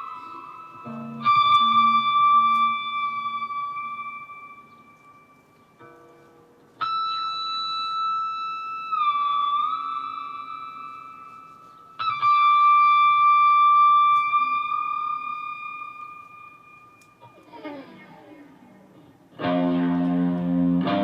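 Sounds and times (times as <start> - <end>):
sustained high instrument notes: 0.0 - 5.5.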